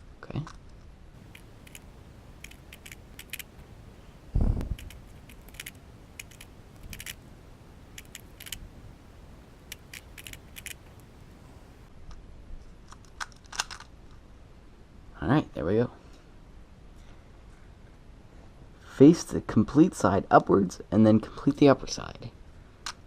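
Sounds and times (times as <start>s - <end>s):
puzzle cube clicking: 1.2s - 3.5s, 4.7s - 7.2s, 8.0s - 8.6s, 9.7s - 11.0s.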